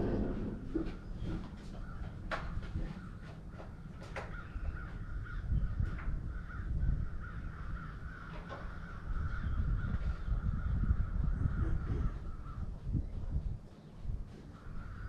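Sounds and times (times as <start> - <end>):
low rumble: 0.0 - 2.0
crows cawing: 2.8 - 12.8, 14.5 - 15.0.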